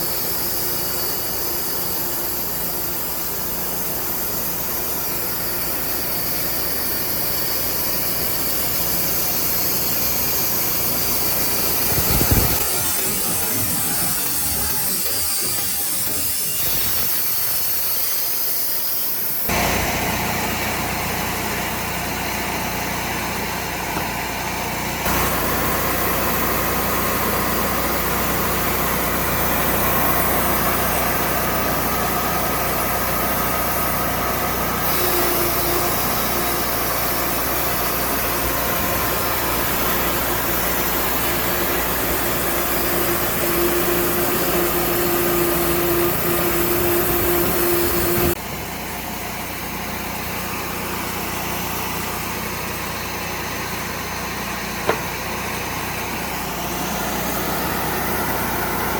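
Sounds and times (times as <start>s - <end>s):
steady whine: 0.0s - 20.4s, 25.1s - 48.7s
sawmill engine running: 0.0s - 58.9s.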